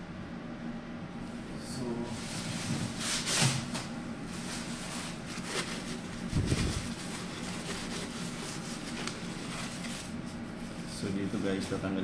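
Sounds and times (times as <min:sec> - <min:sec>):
steady low hum: 0:00.0 - 0:12.0
rubbing rustle: 0:04.4 - 0:10.4.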